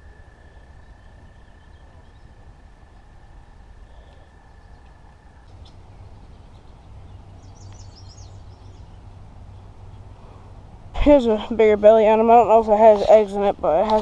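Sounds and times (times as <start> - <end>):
steady low rumble: 0.0 - 14.0
bird chirping: 0.1 - 10.1.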